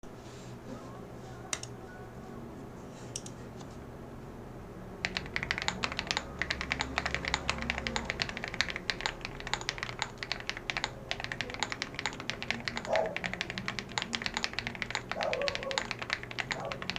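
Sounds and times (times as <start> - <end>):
typing on mechanical keyboard: 5.0 - 16.9.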